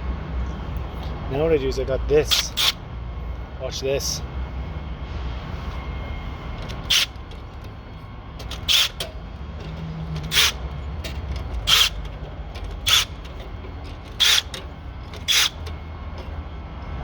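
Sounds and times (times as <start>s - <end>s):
powered tool spinning bursts: 6.9s - 7.2s, 8.4s - 9.0s, 10.2s - 10.6s, 11.6s - 12.1s, 12.8s - 13.3s, 14.1s - 14.6s, 15.2s - 15.6s.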